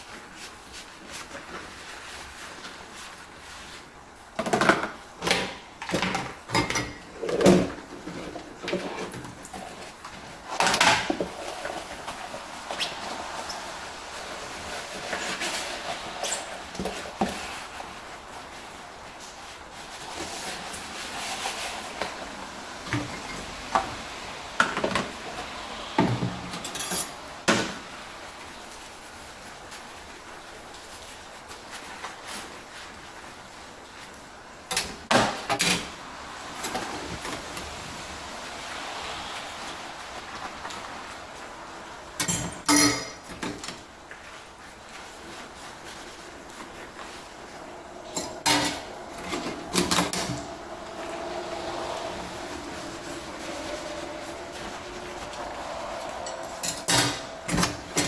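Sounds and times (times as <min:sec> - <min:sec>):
dishes clinking while washed: 0:04.4 - 0:28.0, 0:34.7 - 0:44.2.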